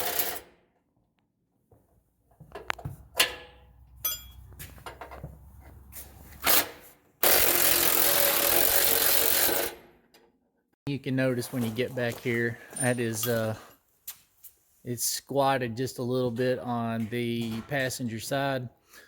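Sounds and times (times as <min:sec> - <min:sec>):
tools clicking and clanking: 0:02.5 - 0:05.4
power tool running: 0:07.2 - 0:09.8.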